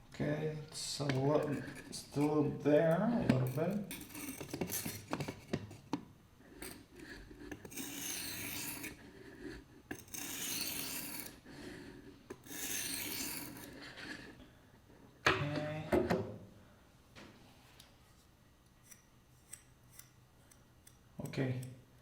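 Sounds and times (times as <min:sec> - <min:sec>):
whetstone grinding knife blade: 0:03.5 - 0:05.3, 0:07.5 - 0:09.0, 0:09.9 - 0:11.4, 0:12.3 - 0:13.8, 0:18.8 - 0:21.0.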